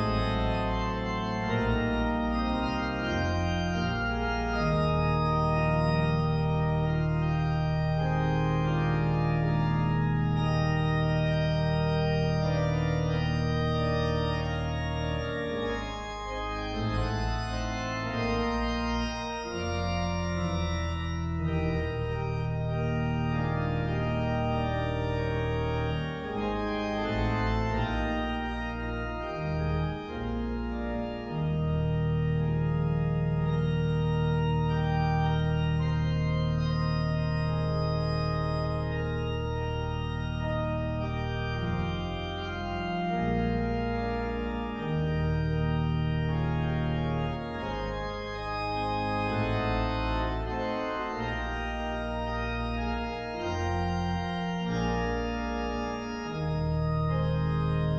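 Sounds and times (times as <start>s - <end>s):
low organ pedal notes: 0.0s - 57.9s
organ chords: 0.0s - 57.9s.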